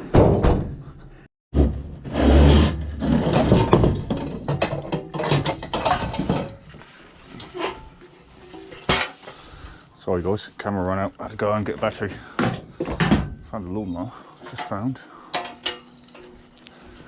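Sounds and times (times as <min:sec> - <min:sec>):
scrap metal knocking and clattering: 0:02.0 - 0:09.5, 0:14.4 - 0:16.4.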